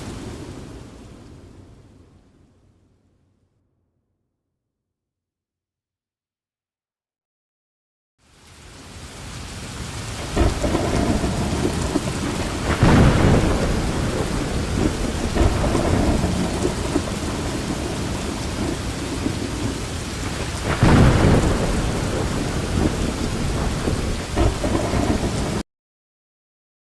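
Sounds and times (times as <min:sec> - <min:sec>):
heavy rain falling: 0:00.0 - 0:02.4, 0:08.2 - 0:25.6
thunder rumbling: 0:09.7 - 0:25.6.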